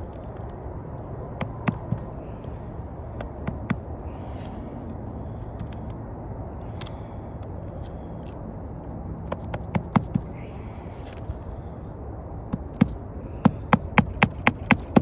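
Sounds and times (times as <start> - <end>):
hammer striking nails: 1.4 - 2.2, 3.3 - 3.9, 9.3 - 10.3, 12.5 - 15.0.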